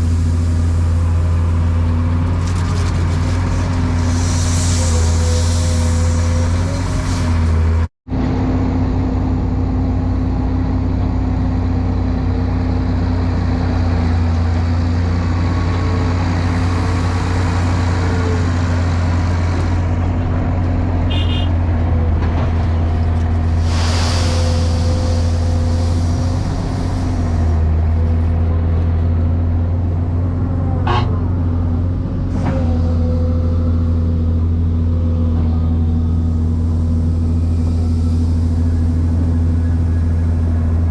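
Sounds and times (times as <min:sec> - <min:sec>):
excavator diesel engine running: 0:00.0 - 0:40.9
hydraulic hiss: 0:23.6 - 0:27.5.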